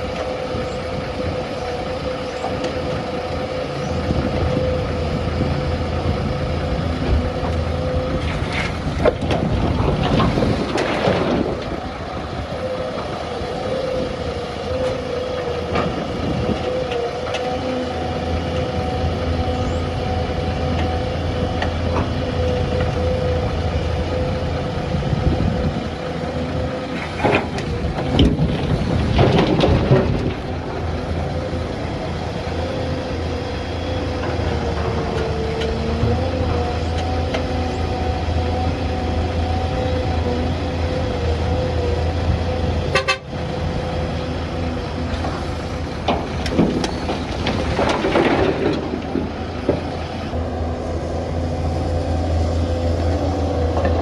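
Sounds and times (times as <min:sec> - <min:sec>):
constant whine: 0:00.0 - 0:54.0
excavator engine and hydraulics: 0:00.0 - 0:54.0
rush of noise with clanks: 0:07.0 - 0:13.8, 0:26.8 - 0:37.5, 0:44.8 - 0:54.0.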